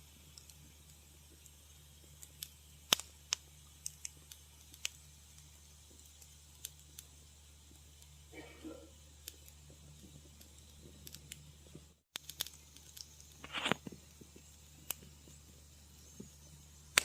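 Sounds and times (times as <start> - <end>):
wood fire crackling: 0.0 - 17.0
faint low hum: 3.5 - 12.0.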